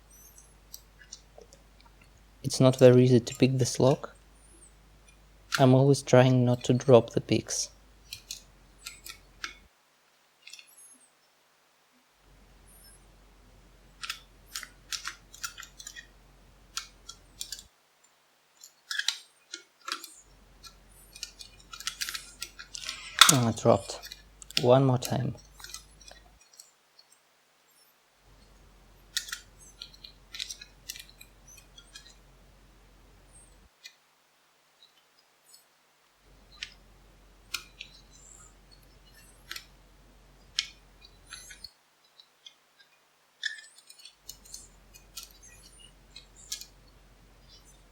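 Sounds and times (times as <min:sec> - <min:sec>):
faint low hum: 0:00.0 - 0:18.8, 0:19.4 - 0:47.9
lock picks clicking and scraping: 0:14.0 - 0:16.1, 0:16.7 - 0:17.7, 0:18.6 - 0:26.7, 0:29.0 - 0:32.2, 0:43.4 - 0:46.9.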